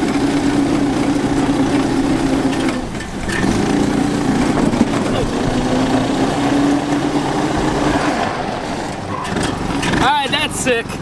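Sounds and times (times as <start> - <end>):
go-kart engine droning: 0.0 - 11.0.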